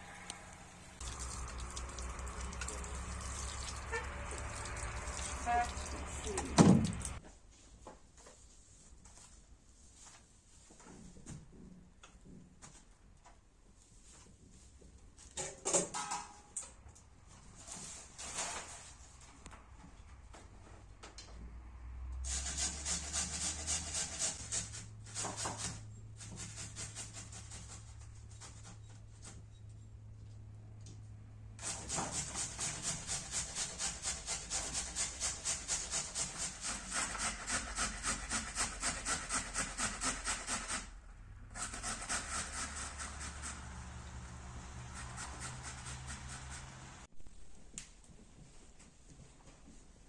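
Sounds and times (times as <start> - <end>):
food grating on grater: 22.3 - 28.8, 31.6 - 40.9, 41.6 - 46.9.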